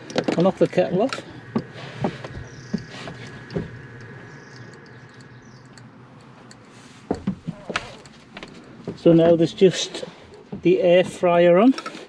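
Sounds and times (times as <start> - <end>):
thin high whine: 0.0 - 9.8.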